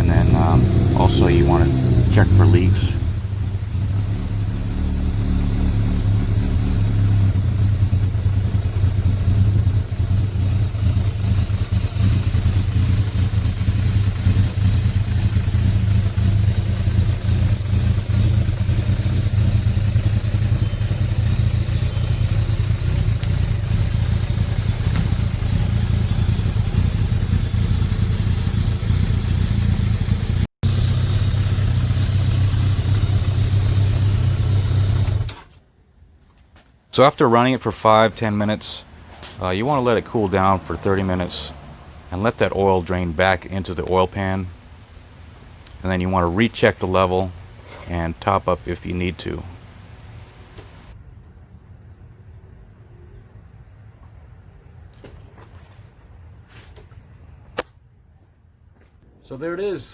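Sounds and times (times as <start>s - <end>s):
motorcycle engine running: 0.0s - 35.6s.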